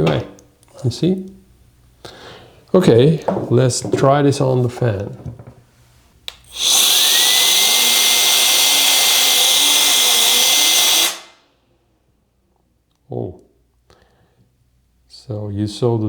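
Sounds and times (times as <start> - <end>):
air duster motor whine: 6.4 - 11.4
rush of air: 6.5 - 11.4.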